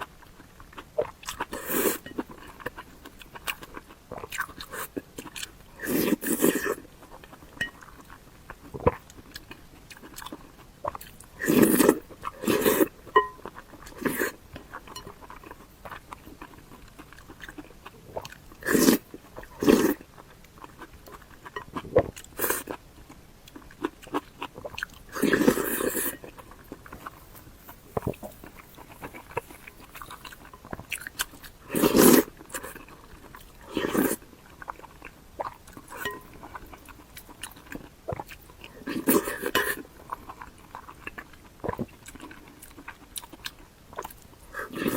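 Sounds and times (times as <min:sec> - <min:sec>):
person chewing with wet clicks: 0:00.0 - 0:44.9
person slurping: 0:11.4 - 0:13.0, 0:18.6 - 0:20.0, 0:24.7 - 0:30.3, 0:31.6 - 0:32.8, 0:44.5 - 0:44.9.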